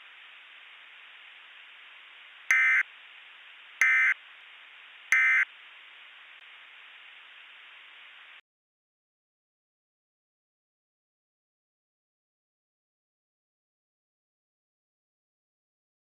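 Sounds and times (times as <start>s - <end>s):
steady hiss: 0.0s - 8.4s
warbling digital data bursts: 2.5s - 2.8s.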